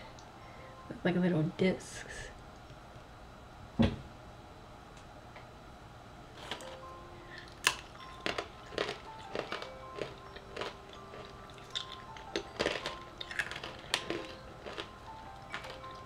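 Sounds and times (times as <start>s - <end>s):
faint background music: 0.0s - 3.3s, 6.0s - 16.0s
person crunching cookies: 7.4s - 16.0s.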